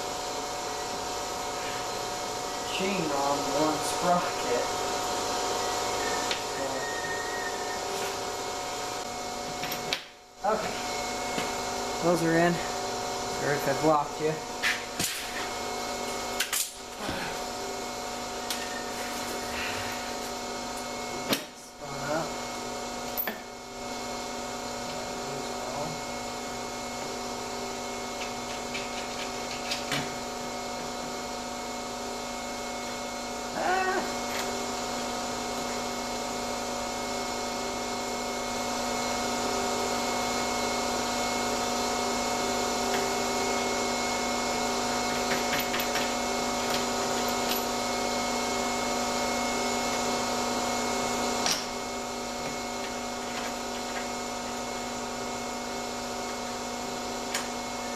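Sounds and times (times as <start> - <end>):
motor whining hum: 0.0 - 23.0.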